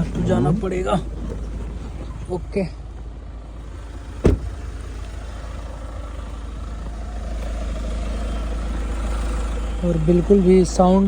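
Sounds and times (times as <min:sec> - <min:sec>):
diesel engine idling: 0:00.0 - 0:11.0
loud thump: 0:04.2 - 0:04.8.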